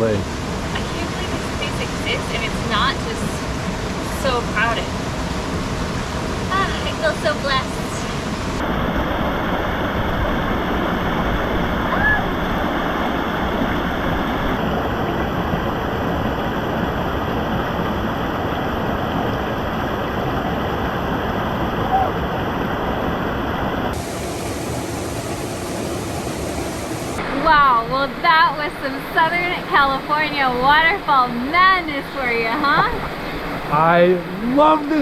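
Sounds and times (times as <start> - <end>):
waterfall roaring: 6.5 - 27.6, 32.2 - 35.0.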